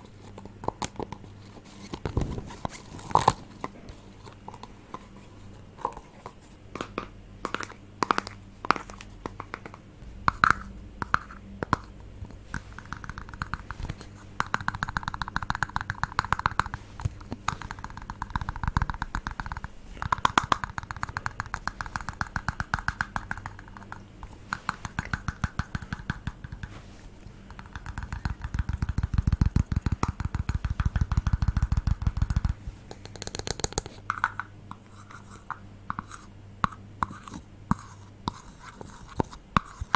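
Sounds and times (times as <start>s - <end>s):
faint steady hum: 0.0s - 39.9s
tapping on an object: 6.8s - 26.8s, 27.5s - 34.8s.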